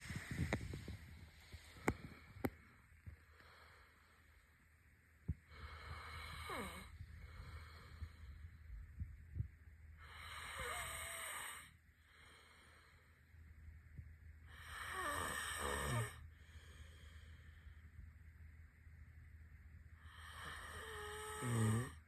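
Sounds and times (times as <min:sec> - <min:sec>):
person snoring with wheezy whistle: 0:10.0 - 0:11.7, 0:14.5 - 0:16.2, 0:20.1 - 0:22.0.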